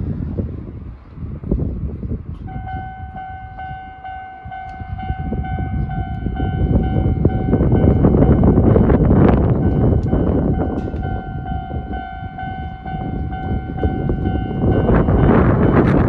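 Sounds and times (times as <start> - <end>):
wind noise on microphone: 0.0 - 16.0
level crossing alarm dinging: 2.5 - 16.0.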